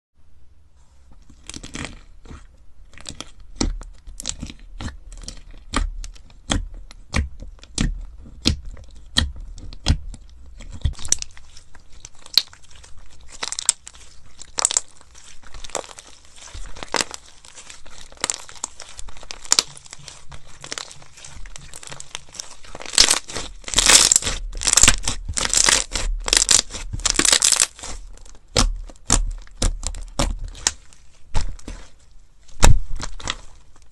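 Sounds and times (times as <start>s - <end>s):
sticky slime popping: 3.0s - 33.9s.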